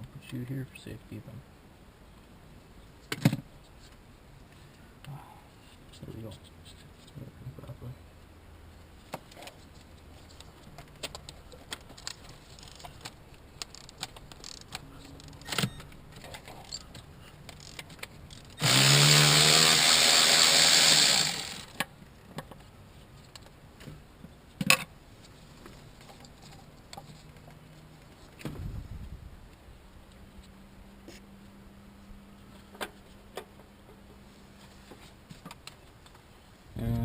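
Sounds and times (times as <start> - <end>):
small power tool whirring: 18.6 - 21.8.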